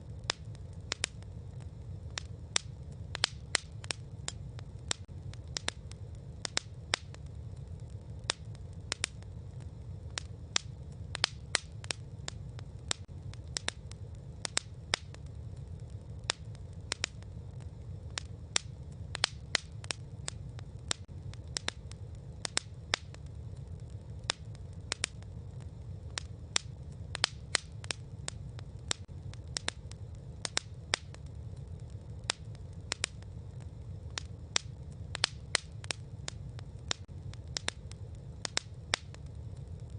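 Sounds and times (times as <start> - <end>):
campfire crackling pops: 0.0 - 39.9
low rumble of burning fire: 0.0 - 39.9.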